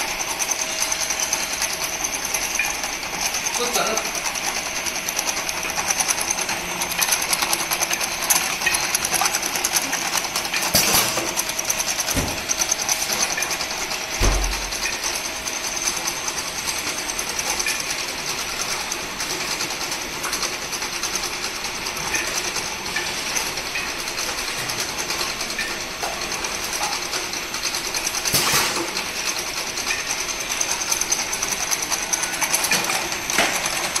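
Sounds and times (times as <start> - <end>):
vacuum leak tester running: 0.0 - 34.0.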